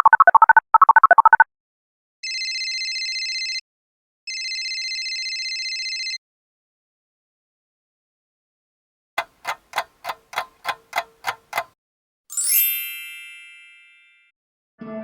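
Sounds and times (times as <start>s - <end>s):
ticking: 9.2s - 11.7s.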